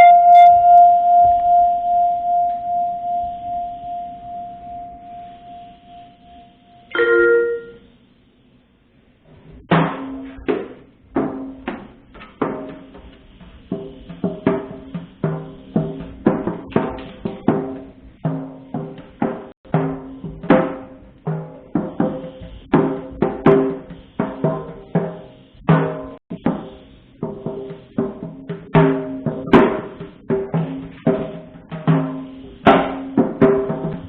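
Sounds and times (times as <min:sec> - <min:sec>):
pitched drum strikes: 0:09.7 - 0:34.0.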